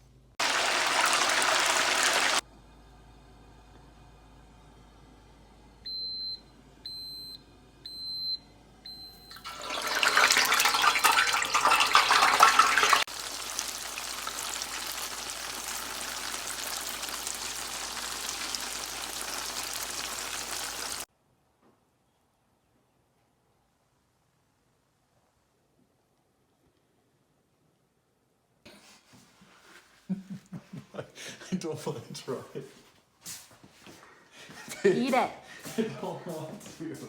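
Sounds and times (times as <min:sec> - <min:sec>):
tofu deep-frying in oil: 0:00.4 - 0:02.4, 0:09.4 - 0:21.1.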